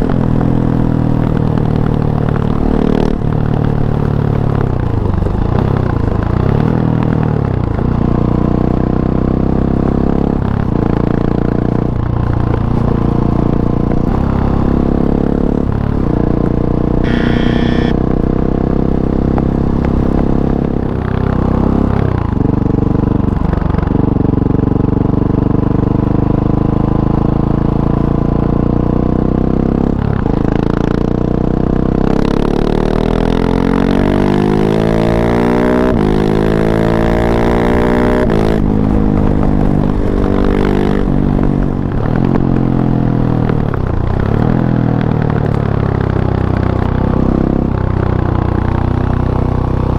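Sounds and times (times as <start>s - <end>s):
motorcycle engine revving: 17.0s - 23.0s.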